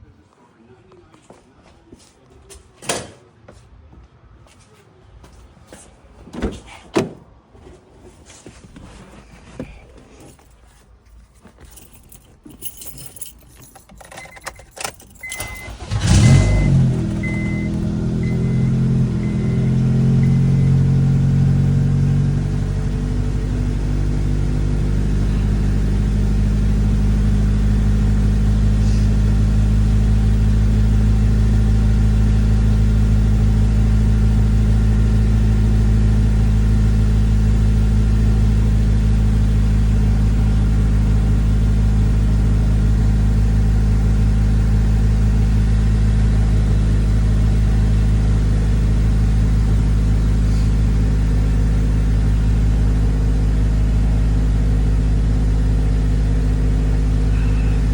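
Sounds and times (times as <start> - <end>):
car engine idling: 12.0 - 57.9.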